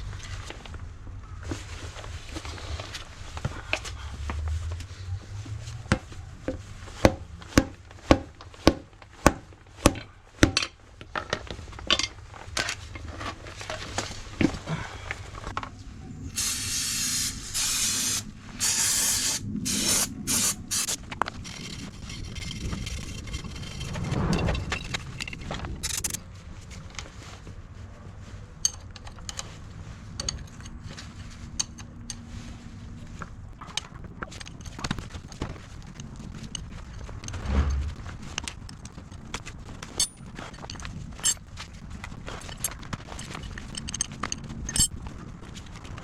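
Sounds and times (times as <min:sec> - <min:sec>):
aerosol spray can hissing: 0:16.3 - 0:21.0.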